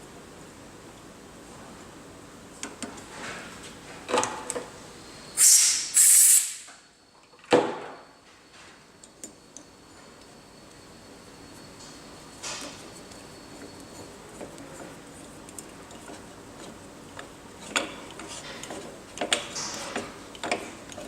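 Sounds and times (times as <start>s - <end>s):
compressed air hissing: 5.4s - 6.7s.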